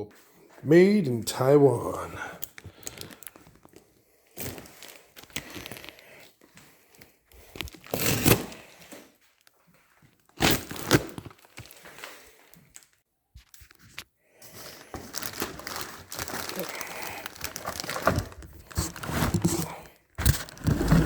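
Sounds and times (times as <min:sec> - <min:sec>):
packaging crinkling and tearing: 0:02.4 - 0:06.2, 0:06.9 - 0:14.0, 0:14.6 - 0:21.0.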